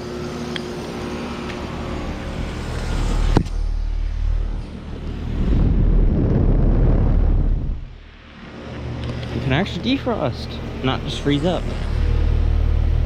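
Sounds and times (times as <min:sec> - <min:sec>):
heat pump low hum: 0:00.0 - 0:13.0
low rushing noise: 0:00.9 - 0:13.0.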